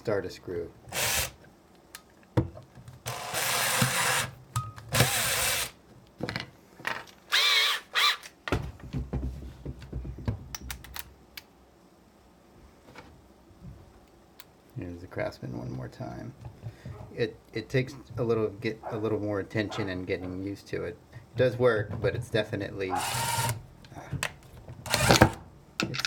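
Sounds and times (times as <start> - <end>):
cordless drill driving a screw: 0.9 - 1.4, 3.1 - 4.3, 4.9 - 5.8, 7.3 - 8.2, 23.0 - 23.6, 24.9 - 25.4.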